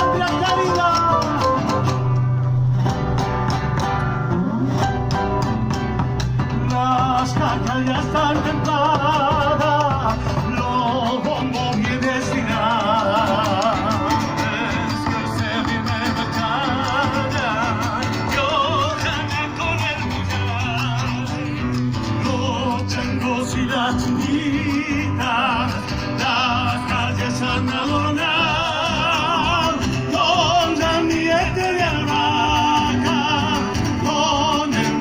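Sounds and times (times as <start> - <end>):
person singing with vibrato: 0.0 - 1.8, 22.1 - 35.0
instrumental accompaniment: 0.0 - 23.4.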